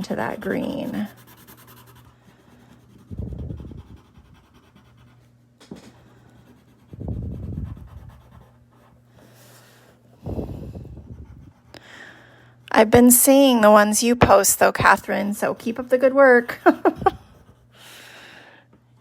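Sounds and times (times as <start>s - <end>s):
crayon rubbing on paper: 0.0s - 5.3s, 5.9s - 9.0s.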